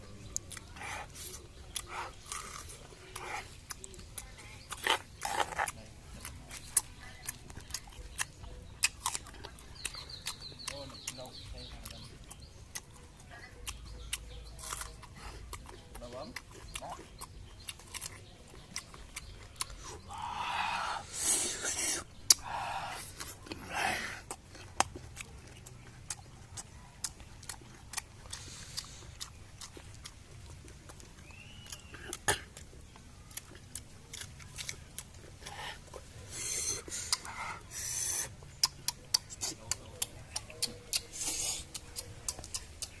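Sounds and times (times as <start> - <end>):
person chewing fruit: 0.0 - 43.0
crunchy bites: 0.1 - 13.0, 13.6 - 43.0.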